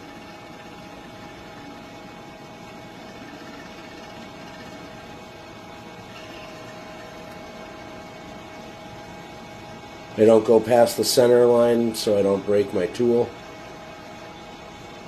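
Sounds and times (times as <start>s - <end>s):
metal lathe humming: 0.0s - 15.0s.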